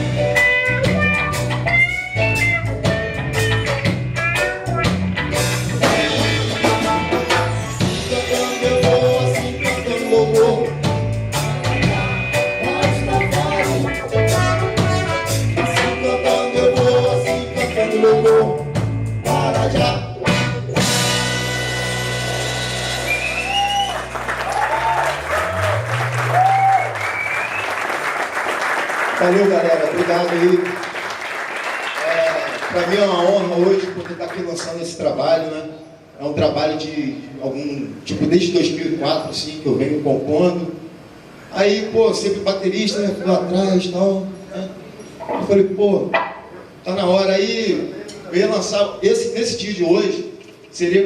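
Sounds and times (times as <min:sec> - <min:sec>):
lead guitar melody: 0:00.0 - 0:19.6
drum kit: 0:00.0 - 0:26.7
bass line: 0:00.0 - 0:27.3
audience applauding and cheering: 0:22.1 - 0:34.7.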